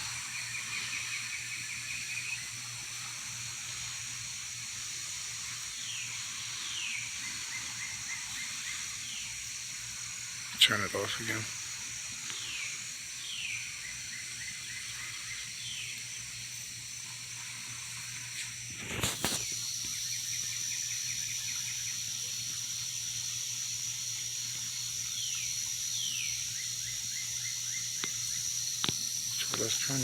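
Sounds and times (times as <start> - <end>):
bird song with fast trill: 0.0 - 2.8, 5.7 - 9.4, 12.4 - 16.5, 19.5 - 30.0
faint hiss: 0.0 - 30.0
high-pitched insect drone: 0.0 - 30.0.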